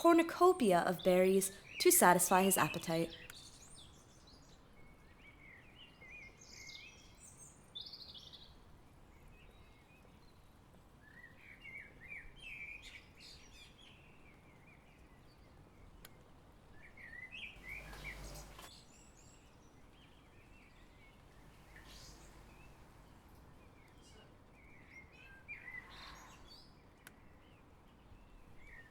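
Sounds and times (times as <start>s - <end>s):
small birds chirping: 16.8s - 28.9s
low outdoor hum: 17.6s - 18.7s, 20.8s - 24.2s.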